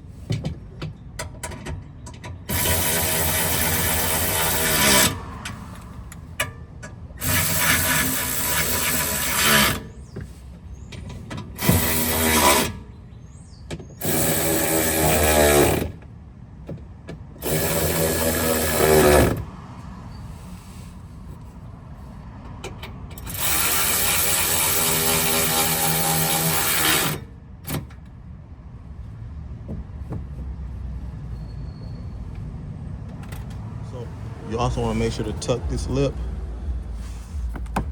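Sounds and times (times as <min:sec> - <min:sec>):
cordless ratchet motor whine: 0:02.5 - 0:05.6, 0:07.2 - 0:09.9, 0:11.6 - 0:12.8, 0:14.0 - 0:16.0, 0:17.4 - 0:19.5, 0:23.2 - 0:27.8.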